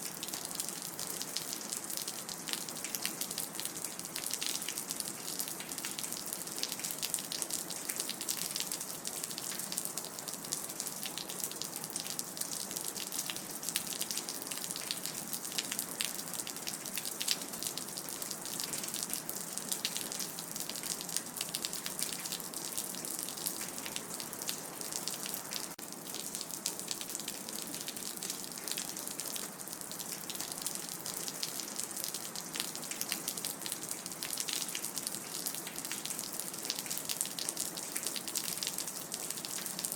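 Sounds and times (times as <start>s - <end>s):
rain dripping: 0.0s - 39.9s.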